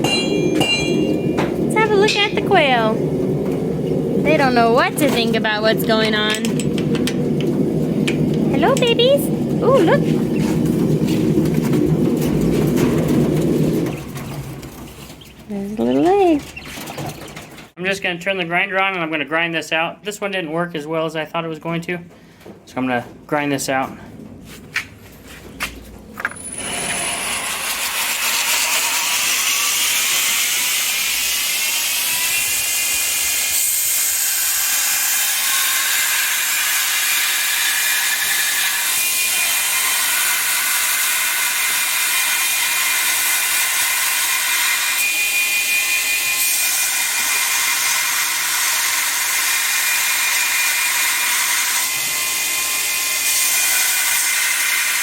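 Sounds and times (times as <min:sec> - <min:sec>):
electric grinder grinding metal: 0:26.4 - 0:55.0.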